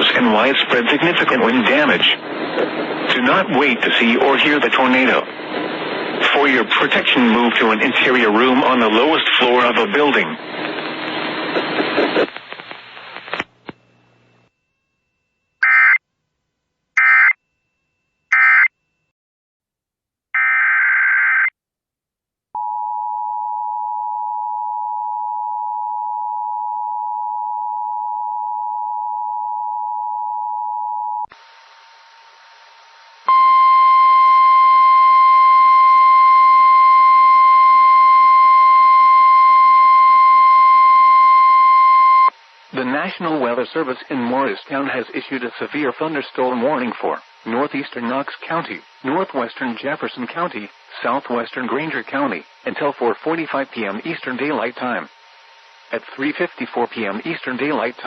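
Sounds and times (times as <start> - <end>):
static: 0.0 - 14.4, 31.3 - 33.3, 42.3 - 58.0
weather radio warning alarm: 15.6 - 16.0, 17.0 - 17.4, 18.3 - 18.7.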